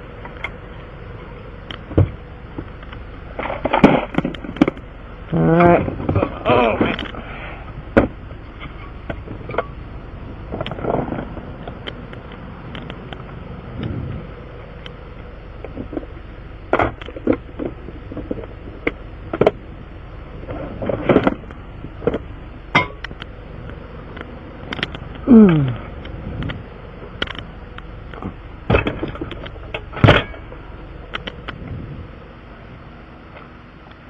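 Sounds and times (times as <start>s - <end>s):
steady low background noise: 0.0s - 34.0s
sharp clicks and knocks: 10.5s - 13.9s, 20.8s - 25.2s, 26.0s - 30.5s, 31.1s - 31.6s.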